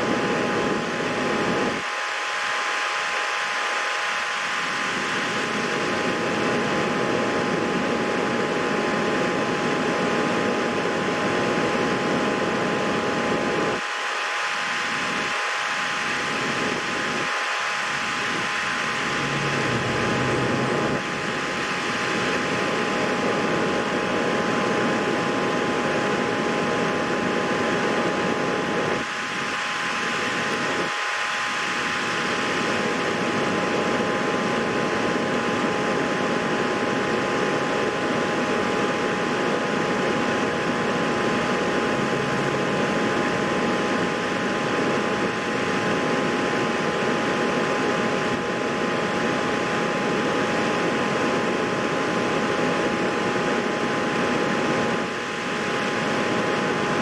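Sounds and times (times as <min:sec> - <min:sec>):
whirring machine: 0:12.8 - 0:25.0
two-note hum: 0:19.1 - 0:21.0.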